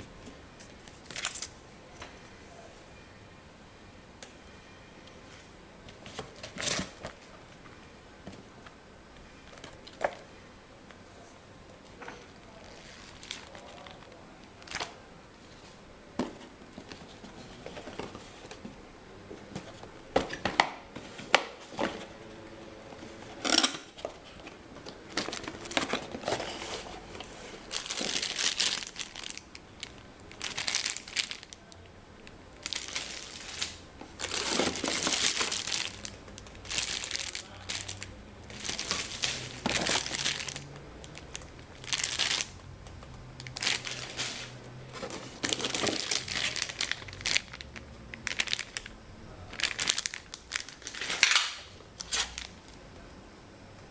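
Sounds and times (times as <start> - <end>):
wrapping crinkling and rustling: 0.6 - 1.6, 12.3 - 15.8, 23.0 - 31.8, 32.6 - 48.9, 49.5 - 52.8.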